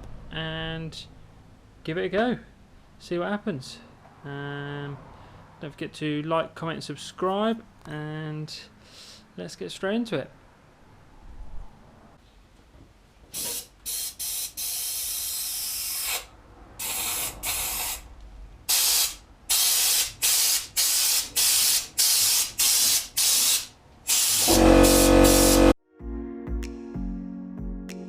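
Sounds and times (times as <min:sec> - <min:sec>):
air spray gun hissing: 0:13.4 - 0:18.0, 0:18.7 - 0:25.8.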